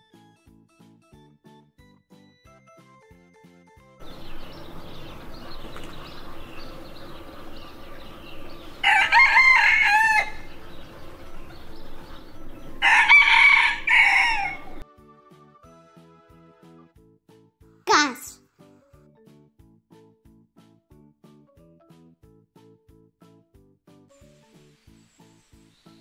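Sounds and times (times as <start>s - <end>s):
rooster crowing: 8.5s - 11.6s, 12.7s - 14.8s.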